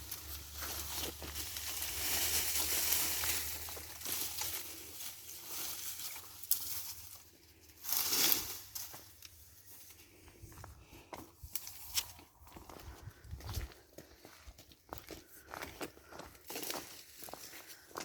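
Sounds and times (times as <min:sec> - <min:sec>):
brush rustling and crunching: 0:00.0 - 0:14.4.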